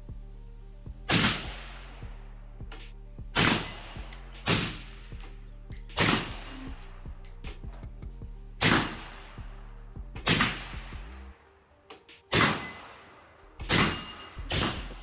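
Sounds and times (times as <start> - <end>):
background music: 0.0 - 15.0
rifle shots: 1.1 - 1.8, 3.4 - 3.9, 4.5 - 4.9, 6.0 - 6.5, 8.6 - 9.2, 10.2 - 10.8, 12.3 - 13.0, 13.6 - 15.0.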